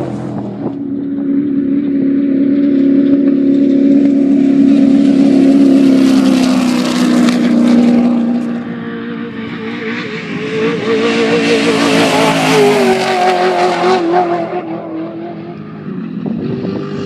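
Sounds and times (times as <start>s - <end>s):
engine revving hard: 9.5s - 15.2s.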